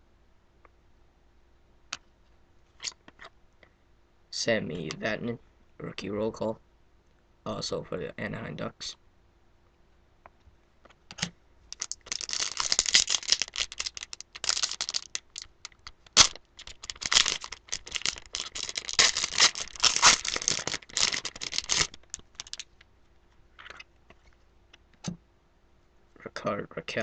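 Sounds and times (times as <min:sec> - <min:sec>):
foil and plastic packaging crinkling: 0:11.7 - 0:22.8.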